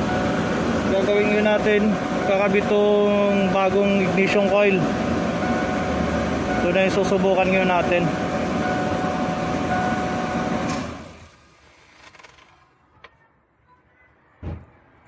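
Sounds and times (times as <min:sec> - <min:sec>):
engine running then shutting off: 0:08.2 - 0:12.5
short thump: 0:14.4 - 0:14.8.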